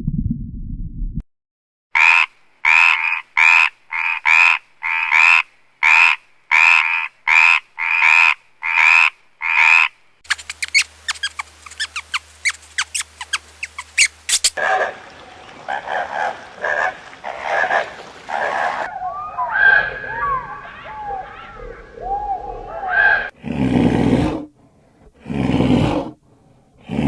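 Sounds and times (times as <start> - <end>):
high clicks and chirps: 10.2 - 14.6.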